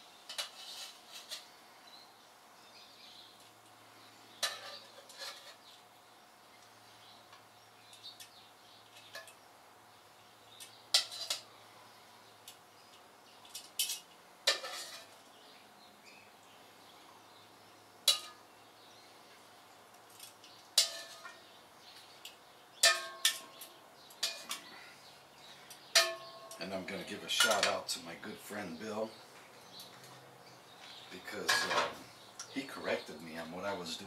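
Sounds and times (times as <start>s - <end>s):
metal utensil clinking on cookware: 18.1s - 18.4s, 20.2s - 21.4s, 22.8s - 24.6s, 25.9s - 26.6s, 27.3s - 27.8s, 31.4s - 32.0s.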